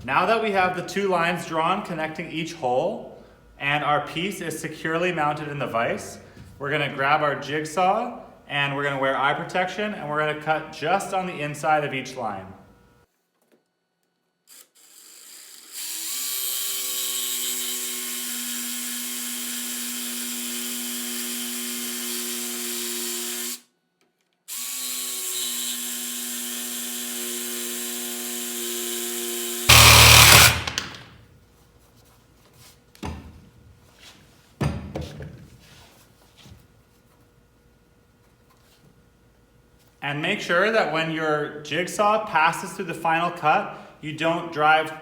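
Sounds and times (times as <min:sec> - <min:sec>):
jigsaw cutting wood: 0:14.6 - 0:23.6, 0:24.5 - 0:31.1
loud noisy clatter: 0:29.7 - 0:31.1.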